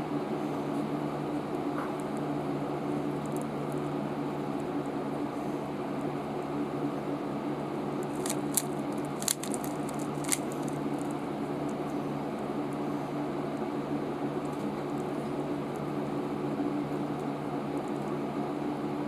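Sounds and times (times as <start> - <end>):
low electrical hum: 0.0 - 19.0
sharp plastic clicks: 8.0 - 11.2.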